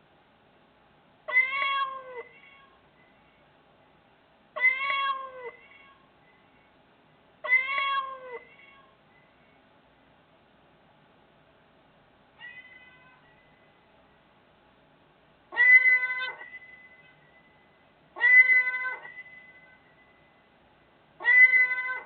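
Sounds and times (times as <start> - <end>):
cat meowing: 1.3 - 2.8, 4.6 - 6.1, 7.4 - 9.0, 12.4 - 13.6, 15.5 - 17.4, 18.2 - 19.9, 21.2 - 22.0.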